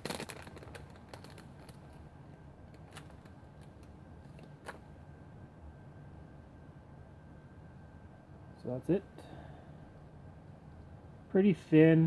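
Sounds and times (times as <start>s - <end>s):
faint plastic handling rustle: 0.0s - 2.0s, 2.7s - 4.8s.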